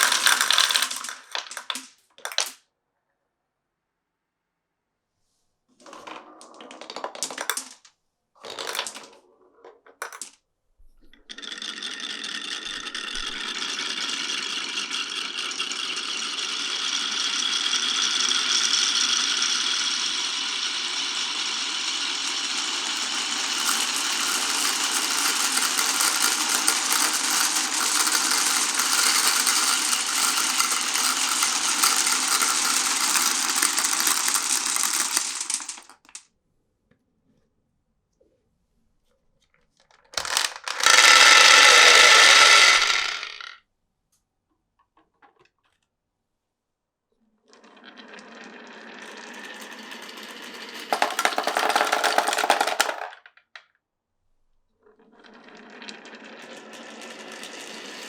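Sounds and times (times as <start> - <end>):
glass marbles clattering on track: 0.0 - 2.6, 6.5 - 7.8, 10.0 - 10.3, 11.3 - 36.2, 40.2 - 43.6, 49.5 - 53.4.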